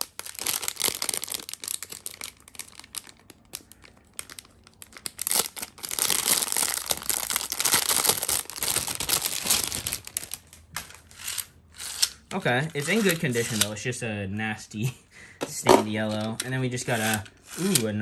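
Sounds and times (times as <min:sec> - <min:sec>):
plastic bag crinkling: 0:00.0 - 0:13.7.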